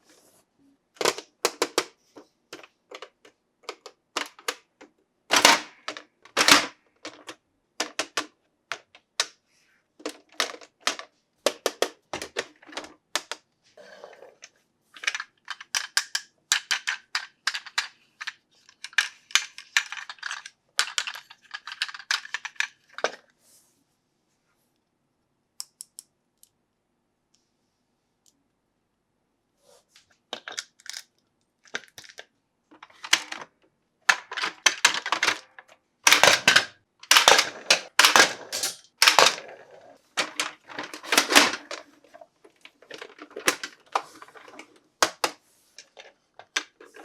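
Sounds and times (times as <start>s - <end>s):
toy pieces and packaging clicking: 1.0s - 1.9s, 2.5s - 9.4s, 10.0s - 13.4s, 15.0s - 23.2s, 30.3s - 33.5s, 34.1s - 47.0s.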